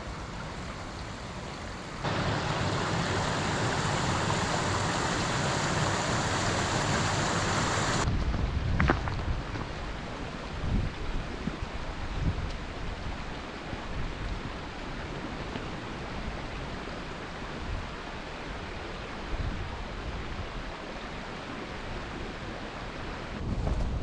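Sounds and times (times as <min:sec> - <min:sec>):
steady wind: 0:00.0 - 0:24.0.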